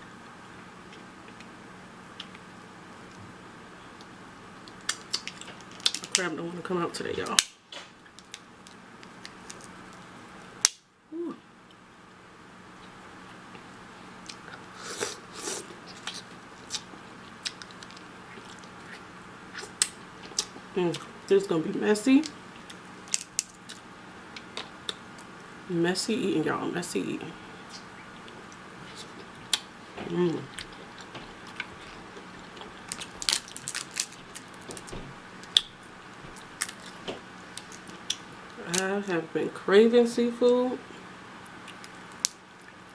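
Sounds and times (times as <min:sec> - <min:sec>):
crab shell cracking: 0:04.6 - 0:06.2, 0:07.2 - 0:10.8, 0:15.9 - 0:18.8, 0:22.2 - 0:25.0, 0:32.8 - 0:35.7, 0:36.4 - 0:38.8
chewing and biting: 0:14.2 - 0:21.1.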